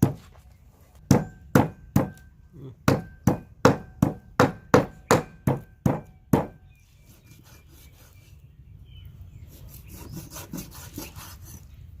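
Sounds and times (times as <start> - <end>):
knife chopping meat on wooden board: 2.9 - 6.6
knife scraping across meat: 6.8 - 8.4, 9.4 - 11.8.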